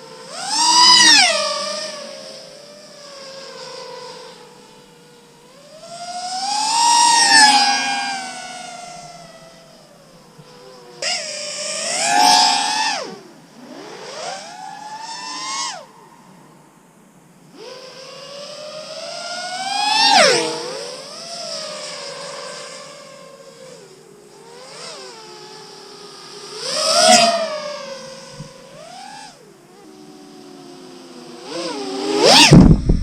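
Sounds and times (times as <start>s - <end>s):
drone motors whining: 10.4s - 15.9s, 17.5s - 33.0s.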